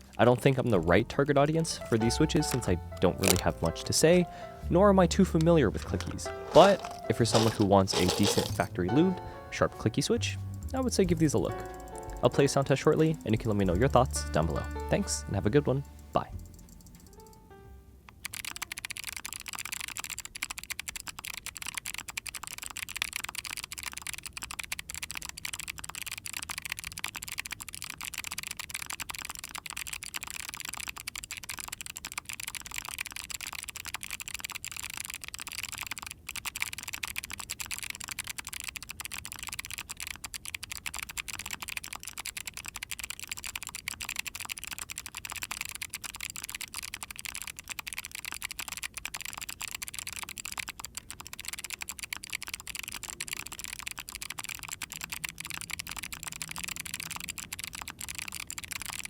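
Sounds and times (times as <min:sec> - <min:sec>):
mechanical keyboard typing: 0:00.0 - 0:17.5, 0:18.1 - 0:59.0.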